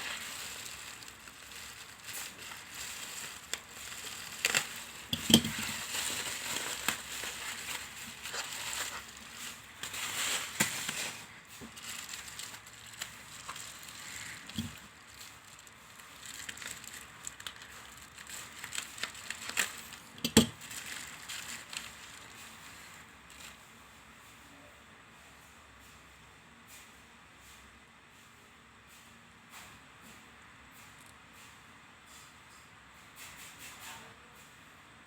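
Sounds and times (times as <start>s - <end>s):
packaging crinkling and rustling: 0.0s - 23.8s.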